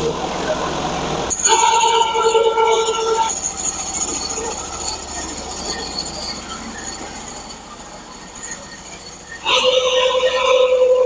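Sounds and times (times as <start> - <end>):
bandsaw mill cutting wood: 0.0 - 8.4
thin high squeal: 0.0 - 11.0.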